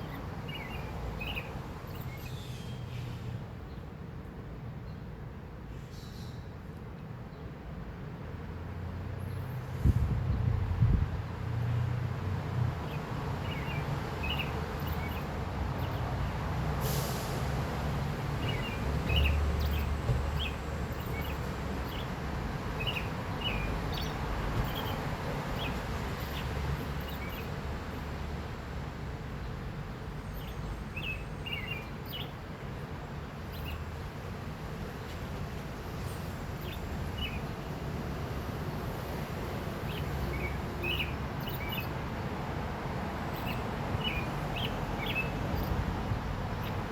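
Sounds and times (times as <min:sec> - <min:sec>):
oriole chirping and whistling: 0:22.8 - 0:25.0.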